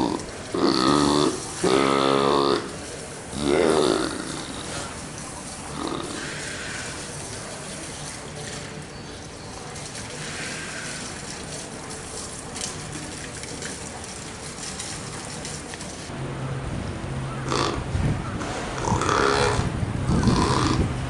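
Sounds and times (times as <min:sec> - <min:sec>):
animal giving low calls: 0:00.0 - 0:07.3, 0:17.4 - 0:20.9.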